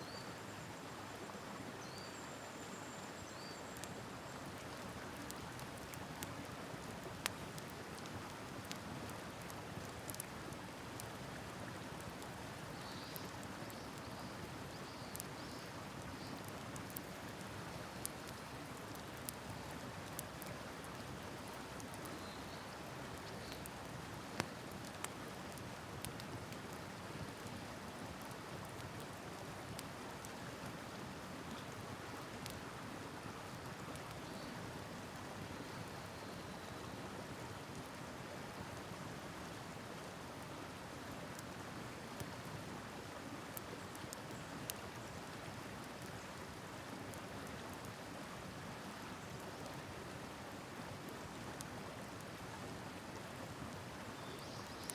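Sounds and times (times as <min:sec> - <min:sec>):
campfire crackling and popping: 0:04.5 - 0:12.4, 0:13.0 - 0:34.2, 0:43.6 - 0:46.8.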